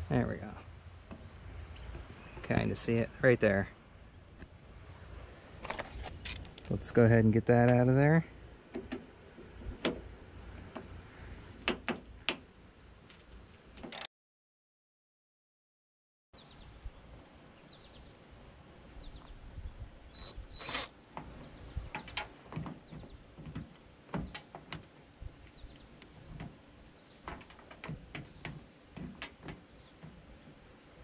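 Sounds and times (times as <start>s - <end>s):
faint bird chirps: 20.1s - 20.7s.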